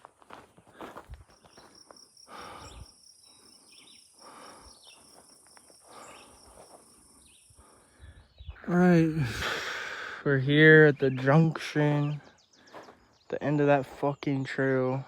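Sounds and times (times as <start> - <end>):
person breathing heavily: 0.7 - 1.1, 2.2 - 10.3, 12.4 - 13.2.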